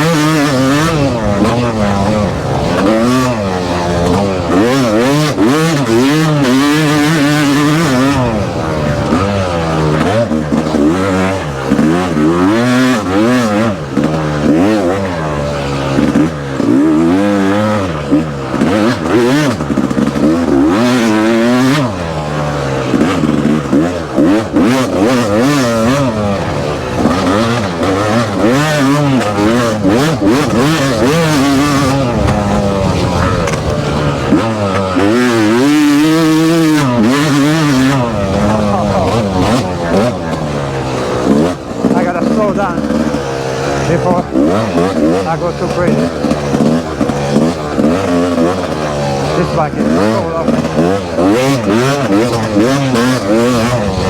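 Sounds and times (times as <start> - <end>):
dirt bike engine revving: 0.0 - 54.0.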